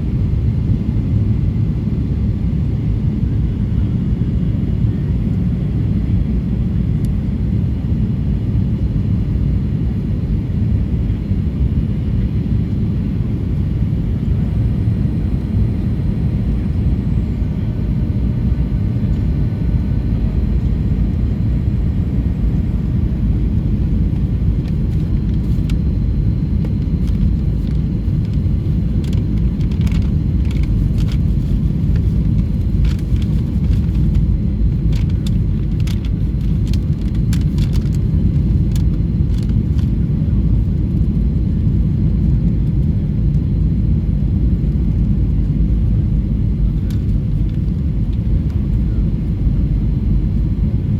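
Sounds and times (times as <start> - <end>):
airplane engines rumbling: 0.0 - 50.9
faint clicks and rattles: 26.6 - 39.9.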